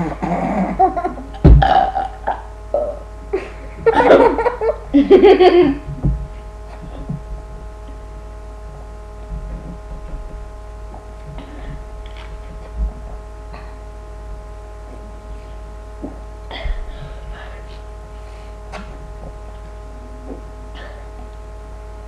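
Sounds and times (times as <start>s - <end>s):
faint steady hum: 0.0s - 22.0s
soft low thumps: 1.3s - 2.1s, 5.0s - 21.3s
laughter: 3.3s - 5.9s.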